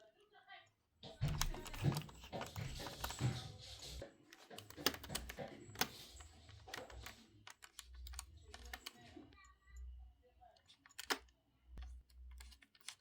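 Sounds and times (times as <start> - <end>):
clicks and taps of small parts: 1.2 - 3.4, 4.4 - 9.0, 10.6 - 13.0.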